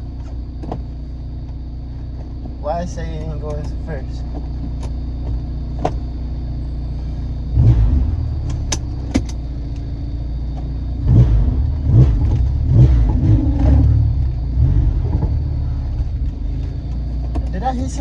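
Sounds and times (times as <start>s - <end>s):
car engine rumbling: 0.0s - 18.0s.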